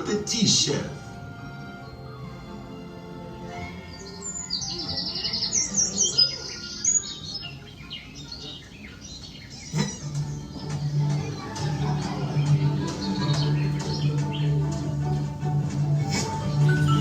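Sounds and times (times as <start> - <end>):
high bird-like chirps: 3.8 - 10.7.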